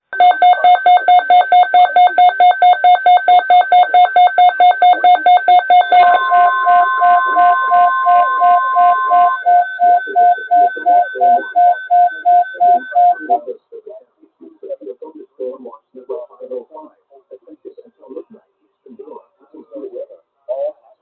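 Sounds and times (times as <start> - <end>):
steady warning alarm tone: 0.1 - 13.5
rapid alert beeping: 0.2 - 13.5.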